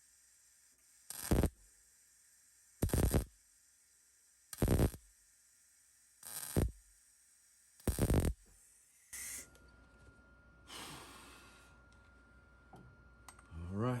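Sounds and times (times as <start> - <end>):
welder crackling bursts: 1.1 - 1.5, 2.8 - 3.2, 4.6 - 5.0, 6.2 - 6.7, 7.8 - 8.4
welder hiss: 2.8 - 3.2, 7.8 - 9.5, 10.7 - 11.6.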